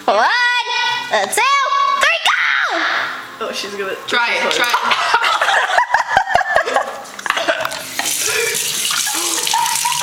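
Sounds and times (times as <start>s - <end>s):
water running from a tap: 7.7s - 10.0s.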